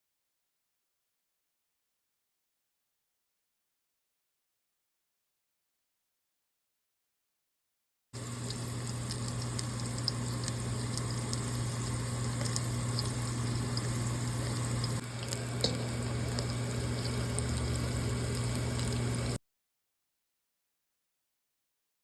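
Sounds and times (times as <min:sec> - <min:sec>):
food sizzling in a pan: 0:08.2 - 0:19.4
low hum: 0:08.2 - 0:19.4.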